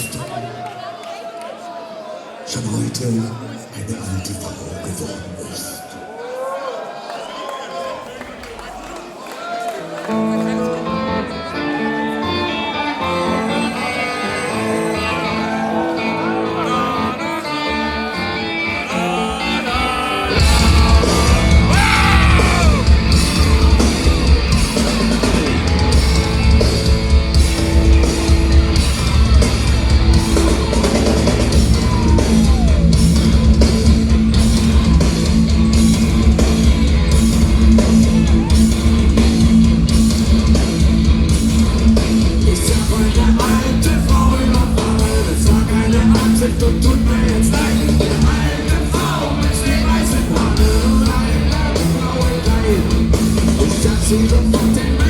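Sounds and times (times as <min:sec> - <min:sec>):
electric guitars: 0:09.9 - 0:55.0
bass guitar: 0:10.7 - 0:55.0
shouted vocals: 0:11.7 - 0:24.5, 0:30.0 - 0:33.2
drums: 0:19.0 - 0:55.0.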